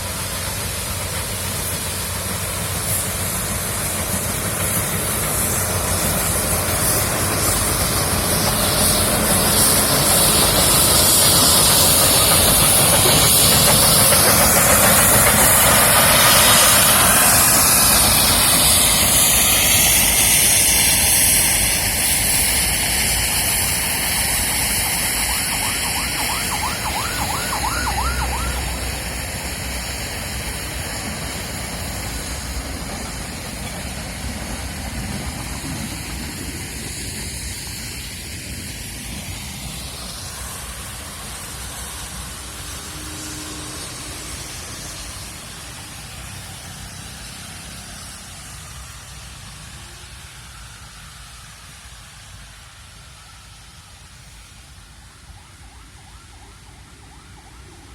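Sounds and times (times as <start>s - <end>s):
steady high-pitched tones: 0.0s - 35.2s, 39.2s - 57.9s
hissing rush: 0.0s - 57.9s
steam locomotive running: 0.0s - 57.9s
warbling tone: 24.5s - 29.3s.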